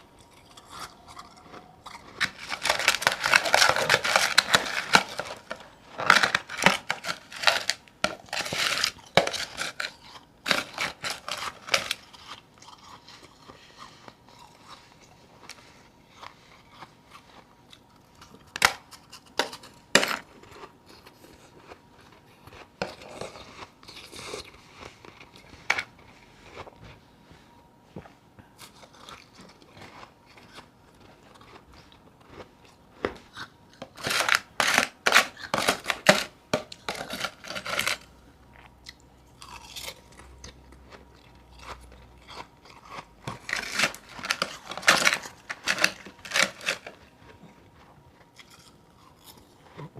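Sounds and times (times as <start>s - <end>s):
quiet chewing: 0.0s - 6.0s, 7.7s - 34.0s, 36.8s - 49.9s
ice crunching: 2.2s - 12.1s.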